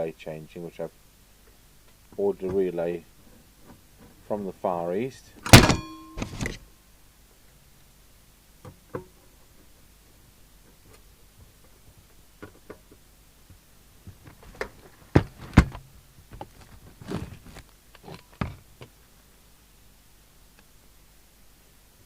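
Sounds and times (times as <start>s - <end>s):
clicks and knocks: 5.5s - 6.6s.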